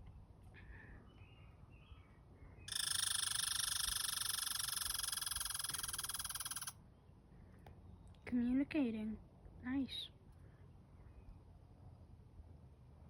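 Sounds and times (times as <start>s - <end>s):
squirrel chatter call: 2.7s - 6.7s.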